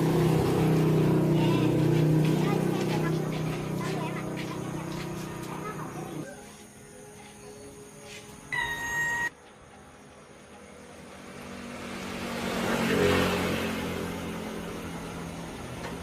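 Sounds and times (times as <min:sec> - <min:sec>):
vehicle passing: 0:00.0 - 0:06.2, 0:08.6 - 0:16.0
short electronic beep: 0:08.5 - 0:09.3.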